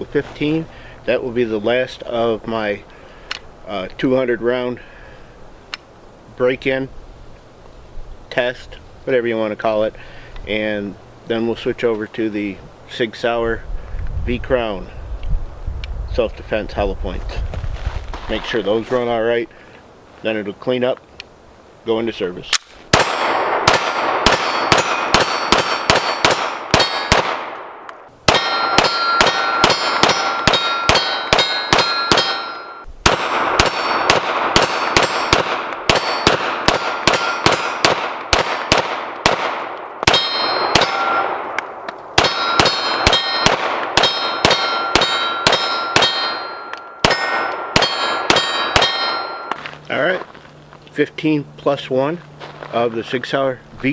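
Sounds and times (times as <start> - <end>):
pistol firing rapid shots: 22.9 - 41.6, 42.2 - 49.2.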